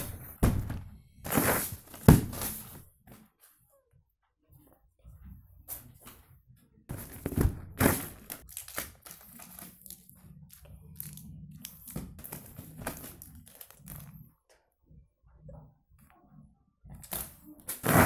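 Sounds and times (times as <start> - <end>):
packaging crinkling and tearing: 7.8 - 14.1.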